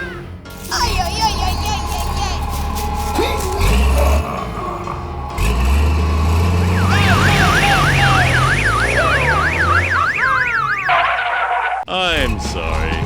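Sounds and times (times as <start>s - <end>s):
police siren yelp: 6.6s - 11.9s.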